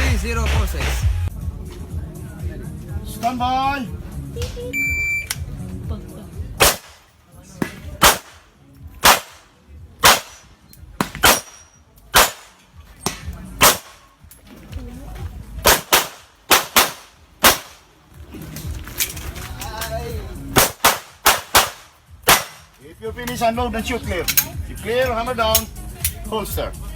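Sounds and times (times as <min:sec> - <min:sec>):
pistol shots: 0:06.6 - 0:14.1, 0:15.6 - 0:17.9, 0:20.6 - 0:22.8.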